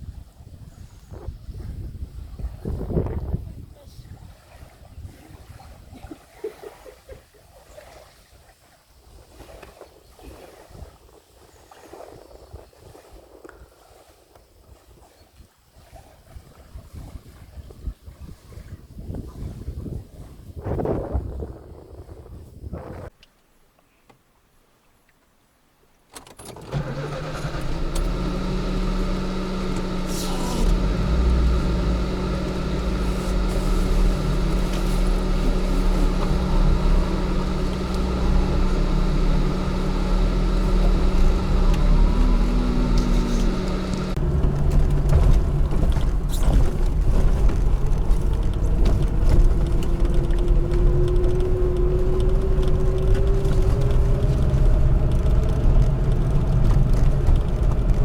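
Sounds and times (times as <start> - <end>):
car engine running: 26.7 - 58.0.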